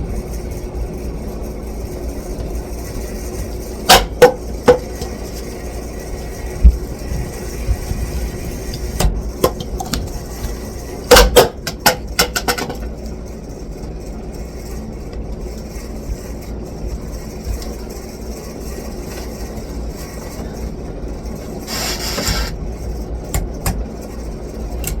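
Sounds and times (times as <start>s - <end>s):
ceiling fan humming: 0.0s - 25.0s
fan clicks and knocks: 3.8s - 5.5s, 6.6s - 13.0s, 23.3s - 24.2s, 24.8s - 25.0s.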